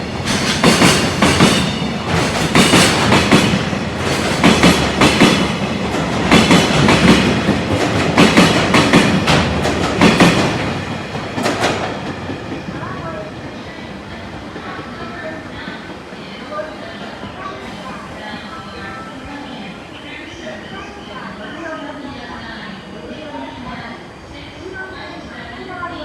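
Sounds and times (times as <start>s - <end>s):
rumble of wheels on rail: 0.0s - 20.9s.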